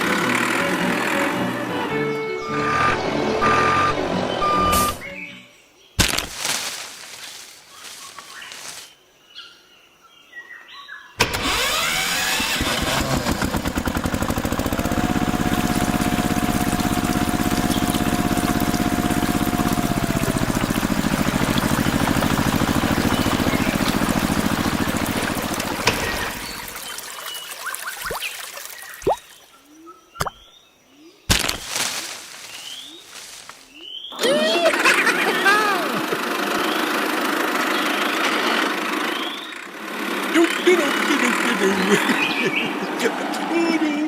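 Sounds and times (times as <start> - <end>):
small motor pulsing: 11.3 - 26.9.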